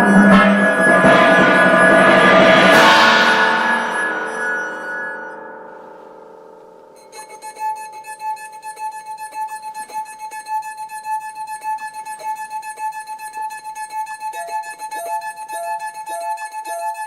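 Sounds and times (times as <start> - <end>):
long held high note: 0.0 - 6.8
music chord: 0.0 - 6.8
plucked string instrument picking: 0.0 - 6.9.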